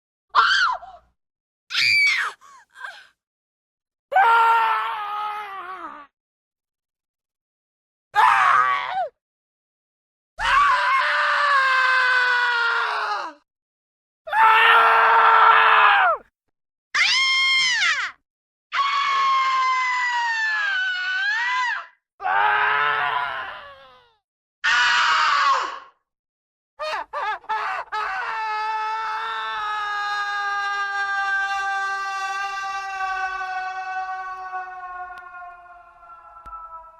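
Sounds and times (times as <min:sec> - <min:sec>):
person screaming: 0:27.5 - 0:36.9.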